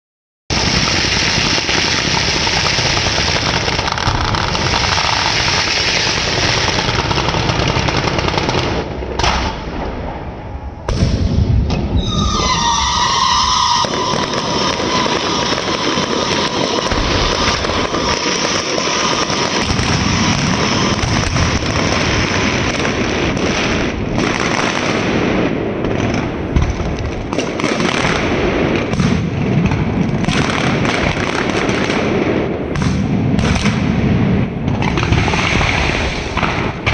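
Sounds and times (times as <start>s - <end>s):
firecracker bangs and crackling: 0.5s - 36.9s
whistling firework tone: 9.8s - 24.8s.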